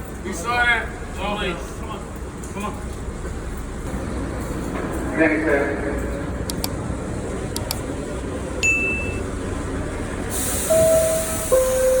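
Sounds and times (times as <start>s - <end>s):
subway train rumbling: 0.0s - 12.0s
sharp clicks: 6.4s - 6.8s, 7.5s - 7.8s
door chime: 8.6s - 9.2s, 10.7s - 12.0s
short high ding: 8.6s - 9.2s, 10.7s - 12.0s
air hissing: 10.3s - 12.0s.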